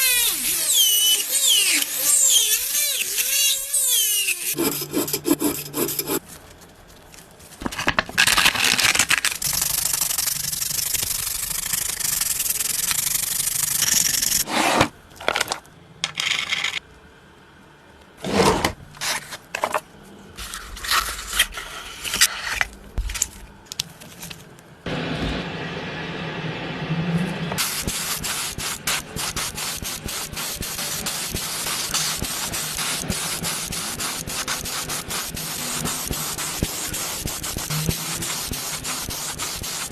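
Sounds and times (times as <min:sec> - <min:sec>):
sanding and scraping: 0:04.5 - 0:06.4, 0:27.6 - 0:39.9.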